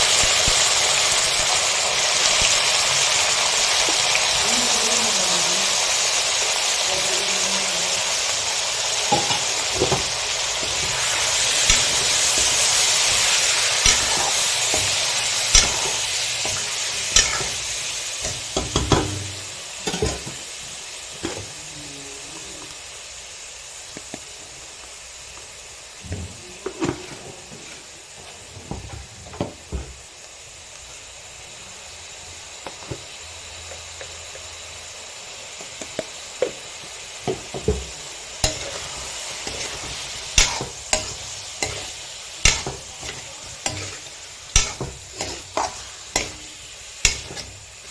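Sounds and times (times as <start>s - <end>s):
chicken sizzling in a pan: 0.0s - 47.9s
utensil scraping a pan: 9.1s - 20.4s, 37.3s - 47.9s.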